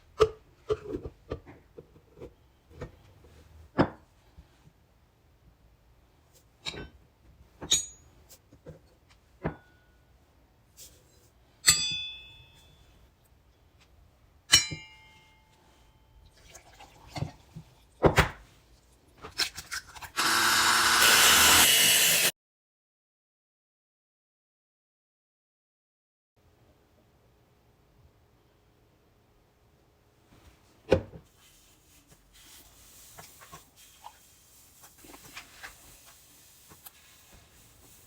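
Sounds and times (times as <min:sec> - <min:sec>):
small motor running: 0:20.2 - 0:22.3.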